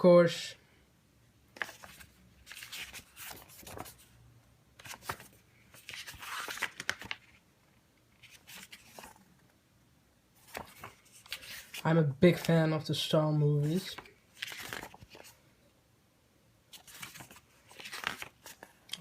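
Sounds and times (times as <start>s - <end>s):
paper pages rustling: 1.6s - 4.2s, 4.8s - 7.4s, 8.1s - 9.5s, 10.4s - 12.6s, 13.6s - 15.4s, 16.7s - 19.0s.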